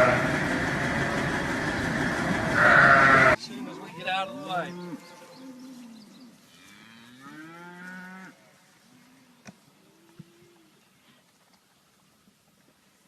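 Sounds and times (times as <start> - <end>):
cattle mooing: 0.0 - 0.8, 2.4 - 8.4.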